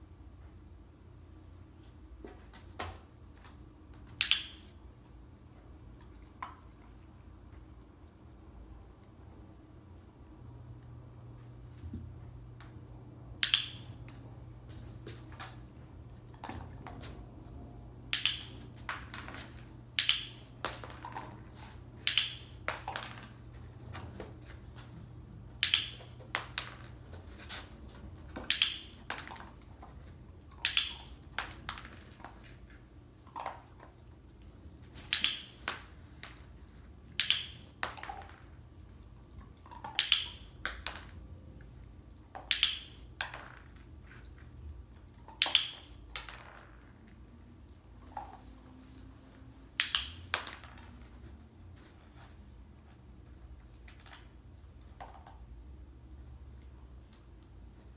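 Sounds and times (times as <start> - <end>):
dog-training clicker clicking: 4.2 - 4.7, 13.4 - 13.9, 18.1 - 18.6, 20.0 - 20.5, 22.0 - 22.6, 25.6 - 26.1, 28.5 - 29.0, 30.6 - 31.2, 37.2 - 37.7, 42.5 - 43.0, 45.4 - 45.9.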